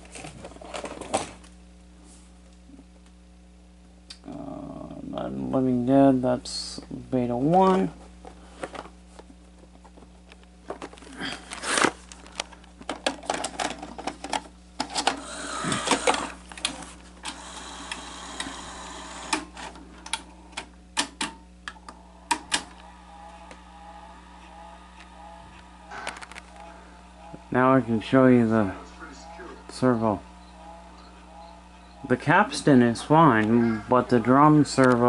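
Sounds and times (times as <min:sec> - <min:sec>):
low mains hum: 0:00.0 - 0:35.0
tape mechanism noise: 0:10.8 - 0:35.0
mechanical clicks and clunks: 0:19.2 - 0:23.6.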